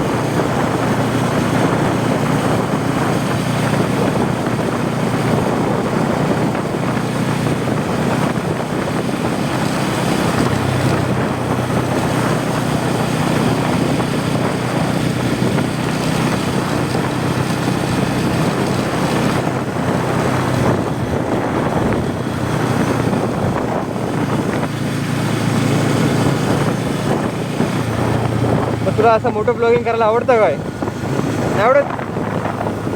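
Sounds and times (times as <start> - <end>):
motorcycle engine running: 0.0 - 32.9
wind on microphone: 0.0 - 32.9.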